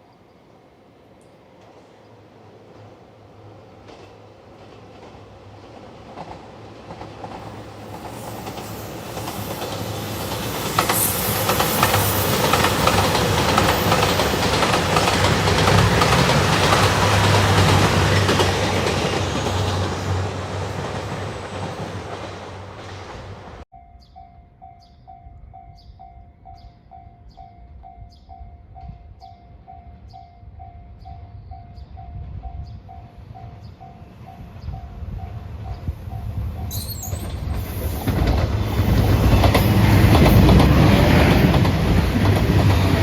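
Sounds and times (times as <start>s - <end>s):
train passing: 0.0s - 23.8s, 24.6s - 43.0s
wheels clicking over rail joints: 3.8s - 20.1s, 36.7s - 43.0s.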